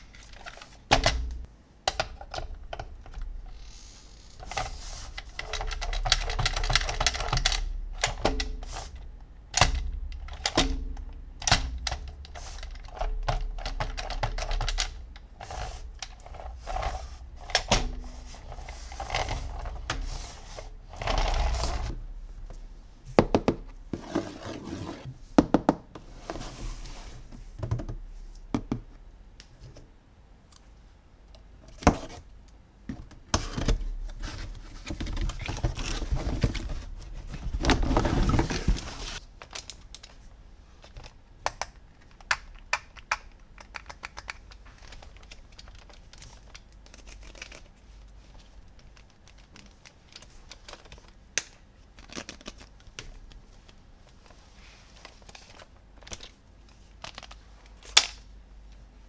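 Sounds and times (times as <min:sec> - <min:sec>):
plastic toys clicking and tapping: 0:00.0 - 0:08.9, 0:11.4 - 0:20.2, 0:40.8 - 0:47.8
packaging rustling: 0:34.1 - 0:40.2.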